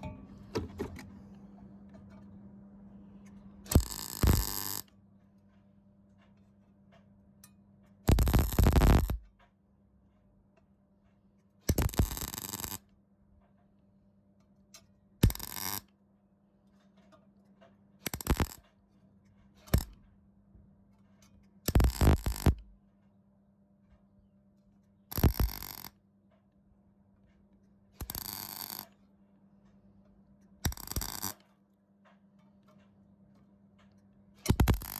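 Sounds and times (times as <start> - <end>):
steady low hum: 0.0 - 4.9
welder arc crackling: 3.7 - 4.8, 8.1 - 9.2, 18.1 - 18.6, 21.7 - 22.6, 25.2 - 25.9, 28.0 - 28.8, 30.7 - 31.4, 34.5 - 34.9.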